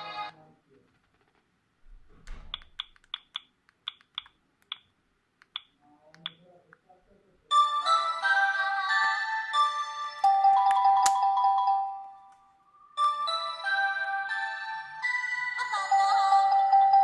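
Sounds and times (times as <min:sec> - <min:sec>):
polyphonic ringtone: 0:07.6 - 0:12.3, 0:15.7 - 0:17.0.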